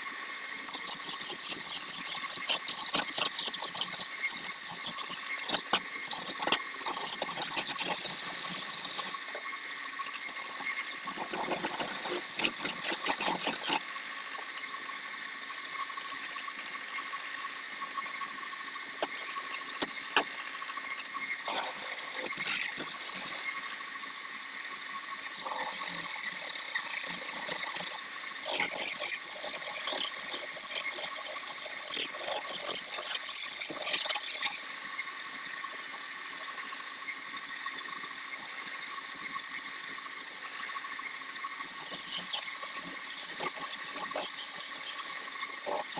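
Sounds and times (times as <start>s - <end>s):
wood lathe whining: 0.0s - 14.6s, 21.3s - 23.8s, 25.3s - 34.8s, 41.6s - 45.9s.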